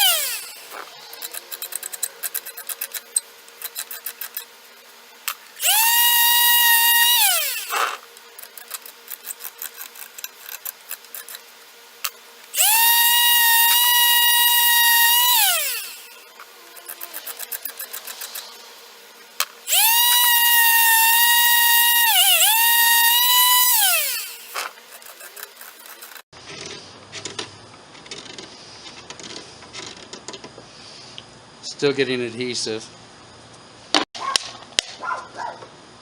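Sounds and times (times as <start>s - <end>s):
palm sander whining: 0.0s - 26.3s.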